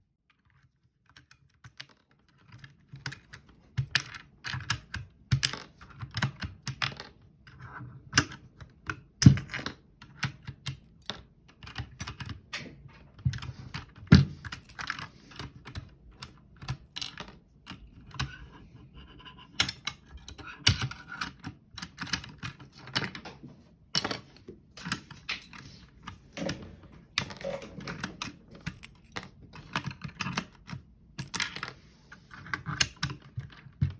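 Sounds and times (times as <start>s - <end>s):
mechanical keyboard typing: 13.7s - 23.2s, 24.8s - 31.7s.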